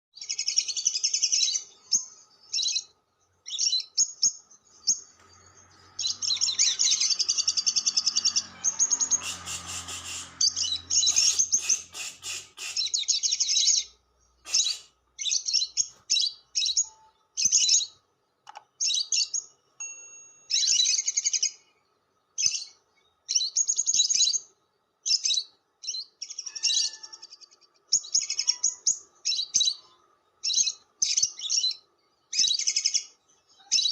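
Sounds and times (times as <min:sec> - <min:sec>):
lovebird chattering in shrill trills: 0:05.9 - 0:13.9, 0:14.5 - 0:17.9, 0:25.1 - 0:31.8.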